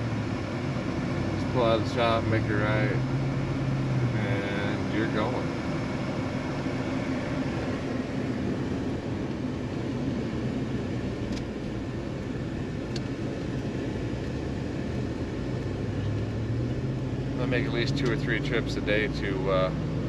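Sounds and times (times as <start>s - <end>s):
vehicle engine and road noise: 0.0s - 20.0s.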